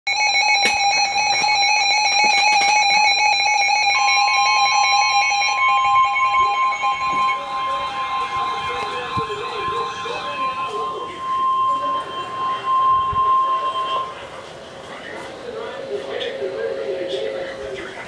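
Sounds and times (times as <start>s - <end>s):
pulsing electronic alarm beep: 0.1s - 14.4s
steady warning tone: 0.1s - 18.0s.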